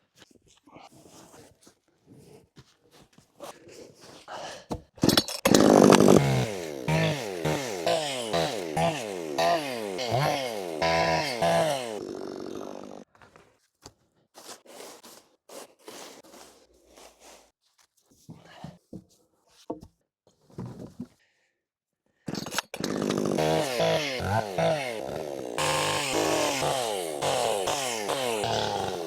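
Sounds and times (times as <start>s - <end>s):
chainsaw revving: 5.5s - 13.0s, 22.8s - 29.0s.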